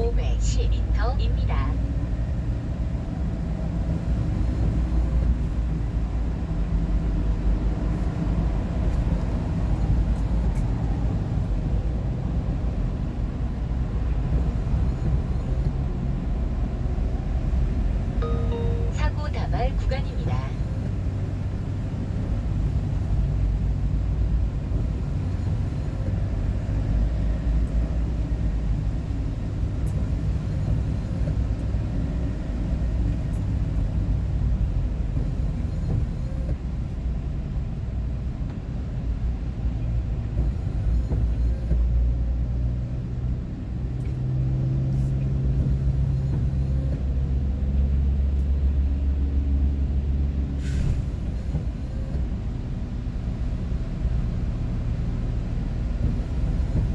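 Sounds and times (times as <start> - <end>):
road noise: 0.0 - 56.9
vehicle engine rumble: 0.0 - 56.9.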